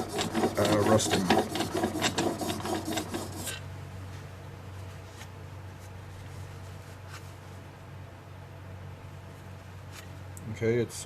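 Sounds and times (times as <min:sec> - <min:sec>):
blade scraping on sharpening stone: 0:00.0 - 0:03.5.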